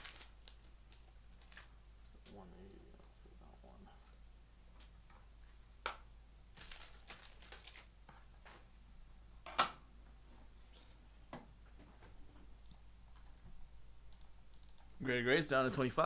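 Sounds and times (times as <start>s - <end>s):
packaging rustling: 0.0s - 1.7s, 6.5s - 7.9s.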